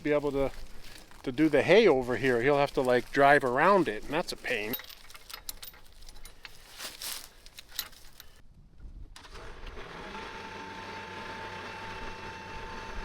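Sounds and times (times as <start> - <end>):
steel chain clinking: 3.6 - 8.4.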